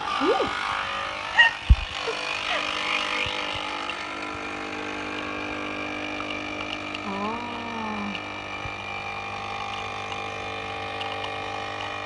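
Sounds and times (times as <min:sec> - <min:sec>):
coffee machine pump running: 0:00.0 - 0:12.0.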